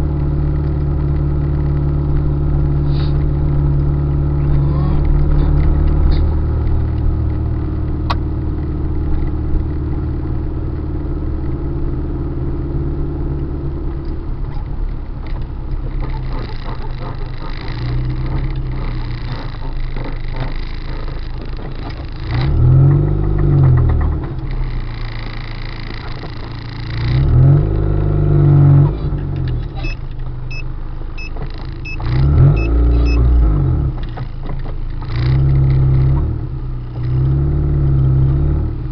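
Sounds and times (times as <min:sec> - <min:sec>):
car engine revving: 0:00.0 - 0:38.9
faint short beeps: 0:29.8 - 0:33.3.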